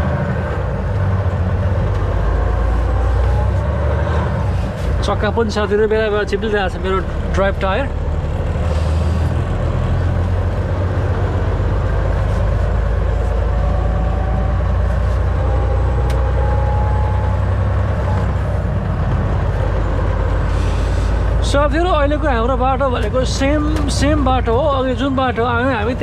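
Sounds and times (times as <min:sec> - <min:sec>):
road and tyre noise: 0:00.0 - 0:26.0
truck diesel engine rumble: 0:00.0 - 0:26.0.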